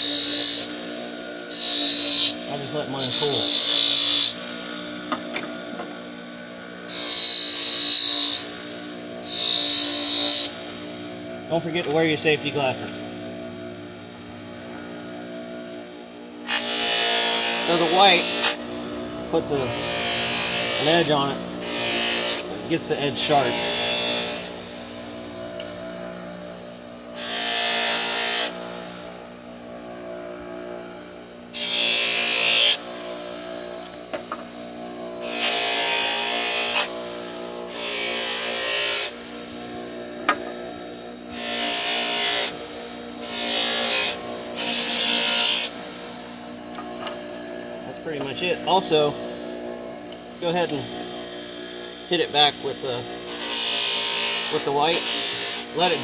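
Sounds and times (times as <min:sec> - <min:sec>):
bench buffer motor humming: 0:00.0 - 0:56.0
knife blade hissing on buffing wheel: 0:00.0 - 0:56.0
knife blade rubbing on wheel: 0:16.5 - 0:26.3.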